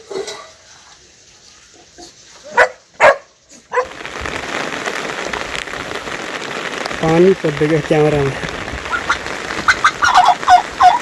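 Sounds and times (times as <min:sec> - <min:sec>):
heavy rain: 0:00.6 - 0:11.0
dog barking: 0:02.4 - 0:03.9.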